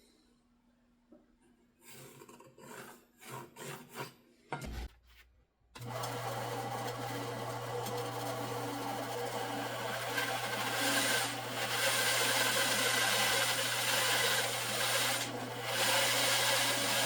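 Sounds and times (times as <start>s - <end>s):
bandsaw motor humming: 5.8s - 17.0s.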